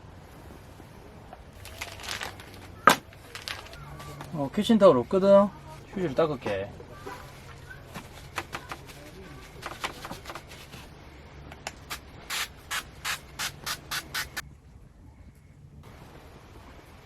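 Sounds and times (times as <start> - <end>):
paper tissue rubbing griddle: 7.1 - 10.9, 11.8 - 14.4.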